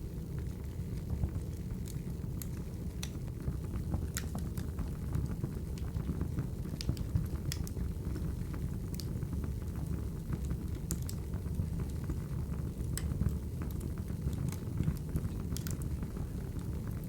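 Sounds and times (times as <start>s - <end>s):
wood fire crackling: 0.0s - 17.0s.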